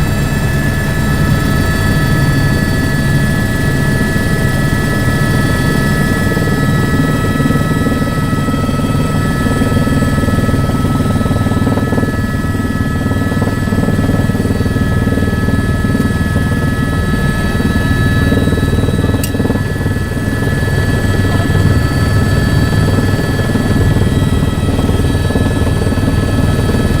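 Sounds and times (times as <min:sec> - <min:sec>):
helicopter rotor and engine drone: 0:00.0 - 0:27.0
high turbine whine: 0:00.0 - 0:27.0.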